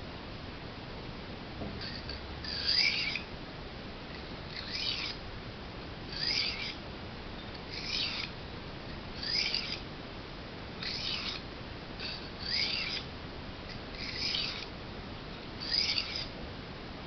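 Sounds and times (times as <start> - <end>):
knife scraping on whetstone: 1.8 - 3.3, 4.1 - 5.2, 6.1 - 6.8, 7.7 - 8.4, 9.2 - 9.8, 10.8 - 11.4, 12.0 - 13.1, 13.7 - 14.7, 15.6 - 16.3.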